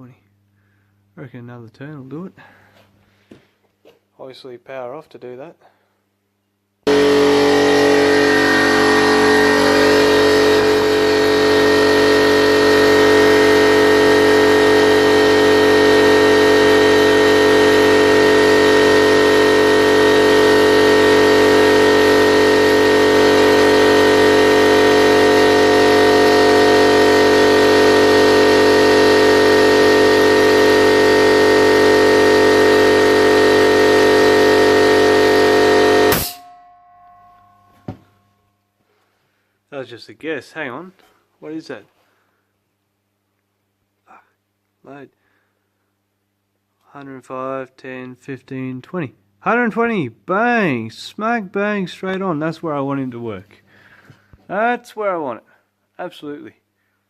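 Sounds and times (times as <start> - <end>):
compressor cut-out burst: 6.9 - 36.6
air compressor running: 6.9 - 36.7.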